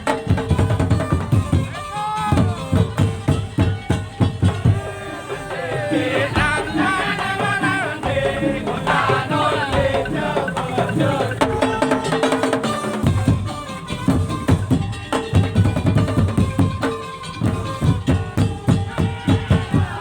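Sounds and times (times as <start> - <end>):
drum and slit-drum strokes: 0.0 - 20.0
wavering melody line: 5.1 - 13.5.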